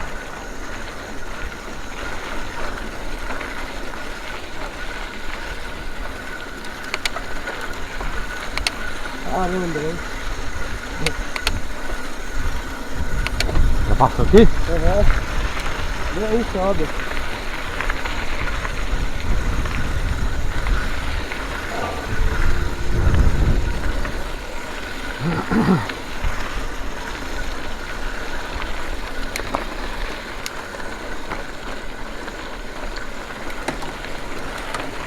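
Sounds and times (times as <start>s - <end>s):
bike tyres rumbling on dirt: 0.0s - 35.0s
wind on microphone: 10.3s - 16.3s, 18.2s - 26.7s
short call: 21.4s - 24.6s.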